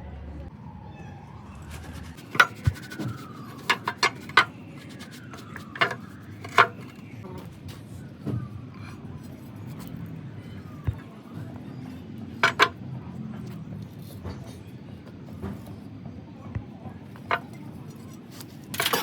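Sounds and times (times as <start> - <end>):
faint wailing falling tone: 0.5 - 7.2.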